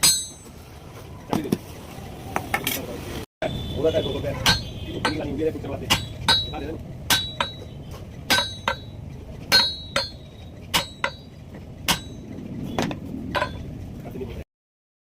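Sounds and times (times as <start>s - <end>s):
hammer striking metal on anvil: 0.0s - 0.6s, 4.4s - 13.7s.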